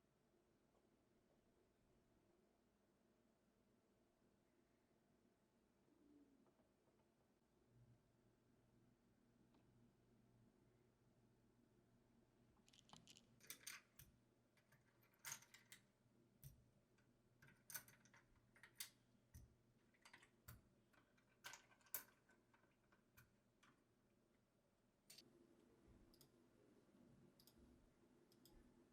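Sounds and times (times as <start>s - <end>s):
keyboard parts clicking and tapping: 12.7s - 14.0s.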